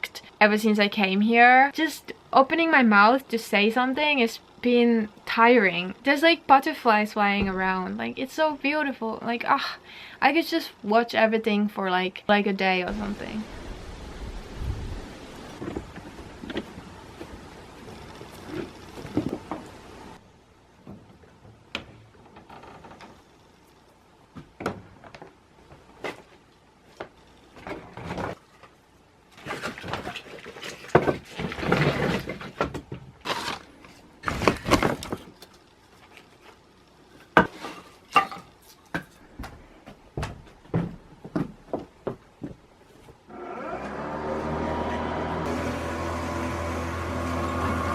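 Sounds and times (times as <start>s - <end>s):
rustling and scraping: 15.4s - 20.0s, 24.8s - 43.3s.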